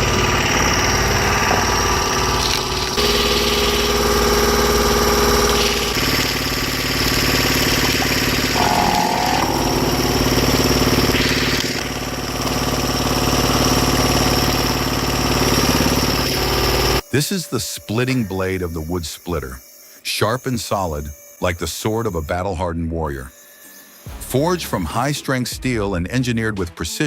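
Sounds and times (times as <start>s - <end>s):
wood-processing machinery running: 0.0s - 19.6s
brief higher tone: 8.6s - 10.2s.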